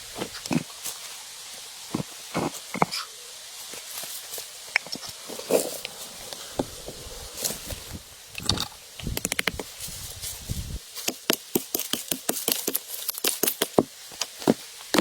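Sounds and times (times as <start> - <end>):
sharp clicks and knocks: 8.4 - 9.6.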